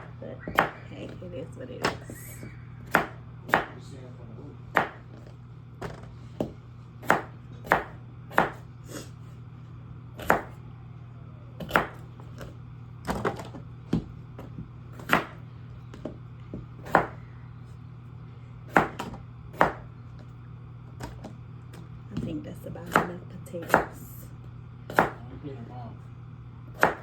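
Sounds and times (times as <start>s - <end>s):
knife chopping on cutting board: 0.0s - 0.8s, 1.8s - 2.2s, 2.9s - 3.8s, 4.7s - 8.6s, 10.2s - 10.6s, 11.6s - 12.0s, 13.1s - 15.4s, 16.0s - 17.2s, 18.7s - 19.9s, 22.2s - 24.0s, 24.9s - 25.2s, 26.8s - 27.0s
steady low hum: 0.0s - 27.0s.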